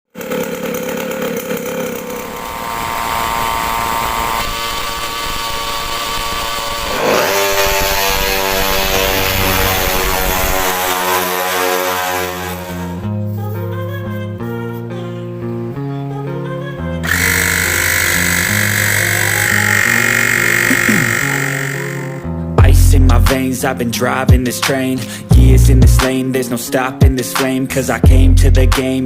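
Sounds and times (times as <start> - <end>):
small engine revving: 0.1 - 13.0, 17.0 - 22.3.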